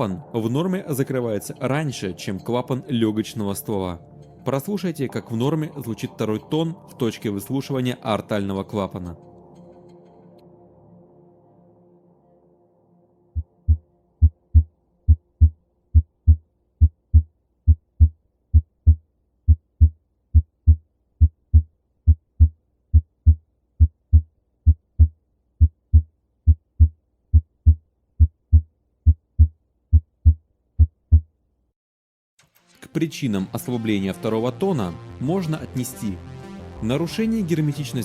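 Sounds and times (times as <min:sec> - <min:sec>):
heartbeat through stethoscope: 0:13.4 - 0:31.3.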